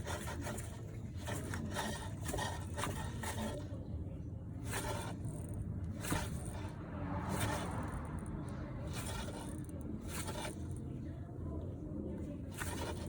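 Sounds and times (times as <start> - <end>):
scraping rasping noise: 0.0 - 3.8, 4.6 - 10.9, 12.4 - 13.0
low engine hum: 3.7 - 12.8.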